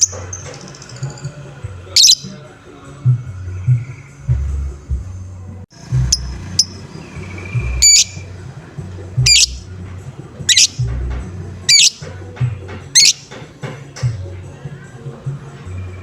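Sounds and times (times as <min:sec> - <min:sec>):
lovebird harsh call: 0:02.0 - 0:02.4, 0:06.0 - 0:08.3, 0:09.2 - 0:09.7, 0:10.5 - 0:11.0, 0:11.7 - 0:12.1, 0:13.0 - 0:13.4
low thumping beat: 0:05.8 - 0:14.4.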